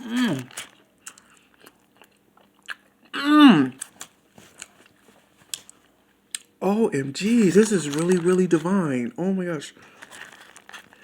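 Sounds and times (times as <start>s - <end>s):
man chewing: 0.0s - 6.5s
mouth clicks and crunches: 0.0s - 6.5s, 9.9s - 11.0s.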